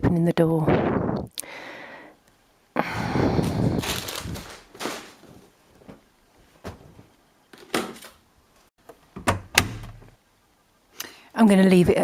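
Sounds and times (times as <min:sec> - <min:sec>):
noisy rustle: 0:03.1 - 0:05.6.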